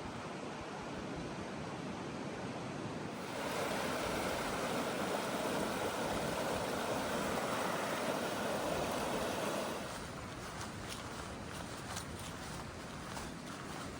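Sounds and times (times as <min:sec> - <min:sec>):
creek water rushing: 0:02.9 - 0:13.9.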